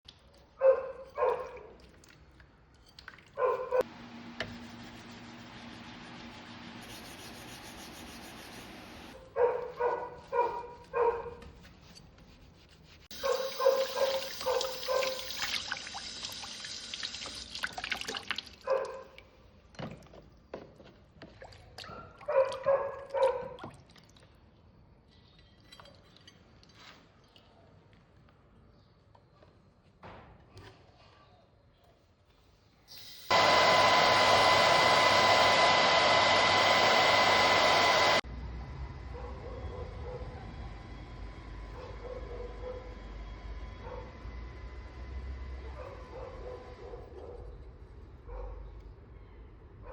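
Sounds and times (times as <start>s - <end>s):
dog barking: 0.6s - 1.7s, 3.4s - 3.9s, 9.2s - 11.4s, 13.2s - 15.3s, 18.6s - 19.2s, 21.9s - 23.6s, 39.1s - 40.4s, 41.8s - 43.0s, 43.8s - 44.2s, 45.6s - 47.6s, 48.3s - 48.7s.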